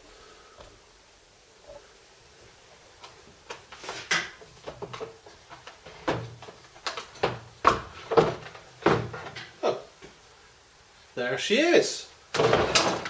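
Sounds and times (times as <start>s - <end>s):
plastic parts knocking and scraping: 3.5s - 9.6s, 12.4s - 13.0s.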